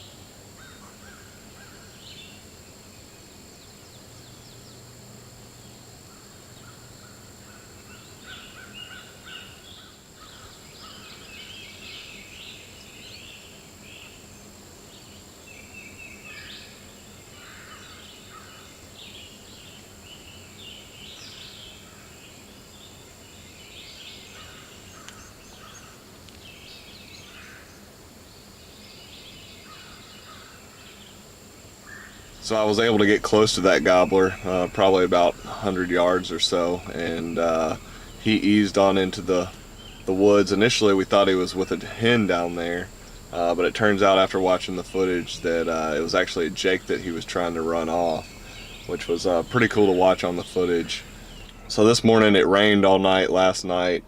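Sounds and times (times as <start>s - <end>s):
songbirds calling: 0.0s - 54.0s
faint turkey gobbling: 31.8s - 54.0s.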